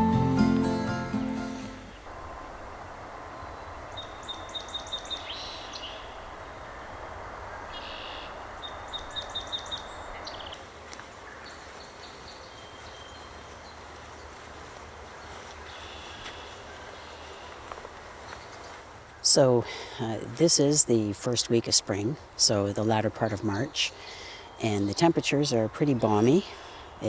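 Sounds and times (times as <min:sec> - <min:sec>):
low background noise: 0:00.0 - 0:27.0
songbird singing: 0:00.0 - 0:27.0
high bird calls: 0:07.6 - 0:10.6.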